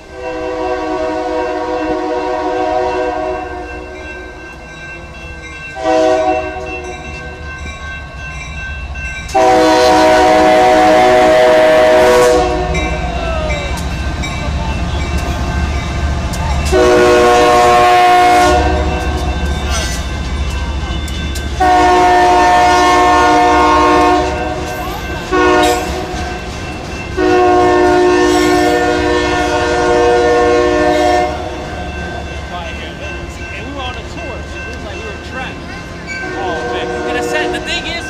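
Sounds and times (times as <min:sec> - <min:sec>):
locomotive air horn blasts: 0:00.0 - 0:03.9, 0:05.8 - 0:06.9, 0:09.3 - 0:13.1, 0:16.7 - 0:20.0, 0:21.6 - 0:26.4, 0:27.2 - 0:31.8, 0:36.2 - 0:37.8
train rumbling past: 0:00.0 - 0:38.0.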